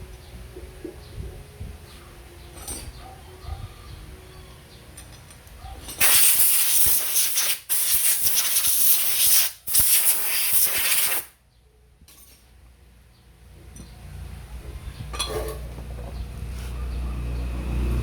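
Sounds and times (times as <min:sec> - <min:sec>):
pressurised spray hissing: 0:06.0 - 0:11.3.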